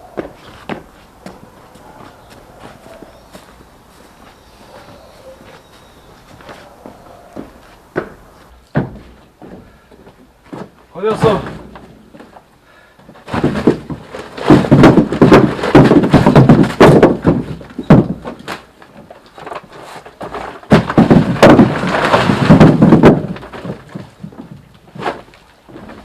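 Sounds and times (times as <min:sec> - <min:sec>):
firewood logs clattering: 0:00.1 - 0:26.0.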